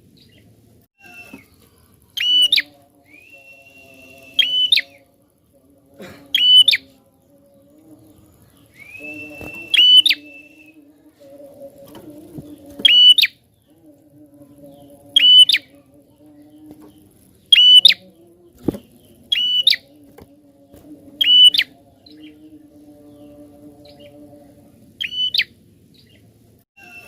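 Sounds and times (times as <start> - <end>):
bird chirps: 0.2 - 5.0, 6.3 - 6.9, 7.5 - 10.8, 12.3 - 13.8, 14.6 - 20.0, 21.2 - 24.2, 25.0 - 26.2.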